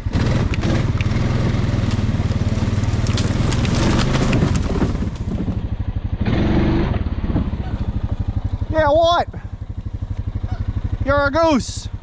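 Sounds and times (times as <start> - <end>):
atv engine at low revs: 0.0 - 12.0
rustling noise: 2.7 - 5.6.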